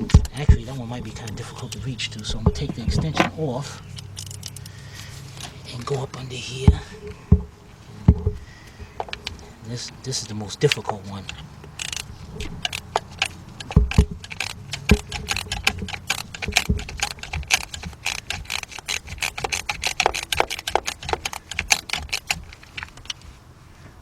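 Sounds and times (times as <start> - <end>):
metal tools knocking: 0.0 - 4.7, 5.4 - 23.2
ratchet clicking: 11.6 - 23.2.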